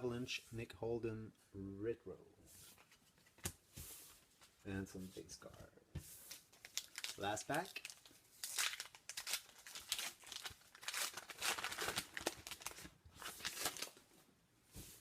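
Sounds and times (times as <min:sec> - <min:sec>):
wrapper crinkling and tearing: 0:06.3 - 0:14.1.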